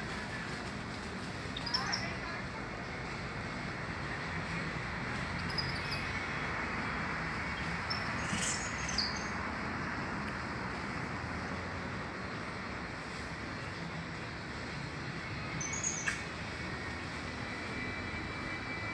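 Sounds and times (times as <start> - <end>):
birds chirping: 7.5 - 9.3, 15.4 - 16.4.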